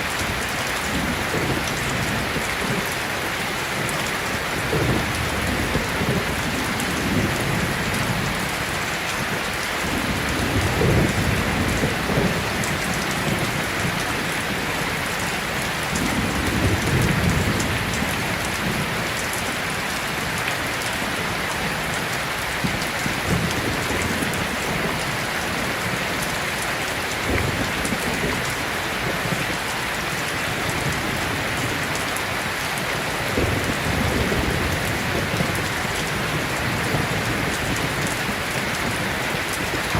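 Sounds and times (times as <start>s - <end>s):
heavy rain pattering: 0.0s - 39.9s.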